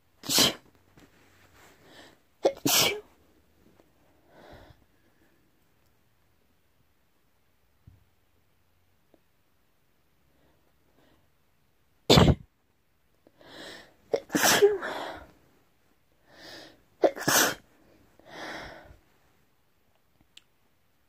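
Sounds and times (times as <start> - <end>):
person sneezing: 0.2 - 0.7, 2.4 - 3.1, 12.1 - 12.4, 14.1 - 15.2, 17.0 - 17.6.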